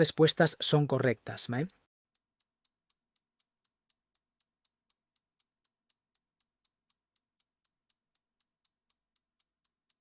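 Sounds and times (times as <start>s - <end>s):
clock ticking: 2.1s - 10.0s.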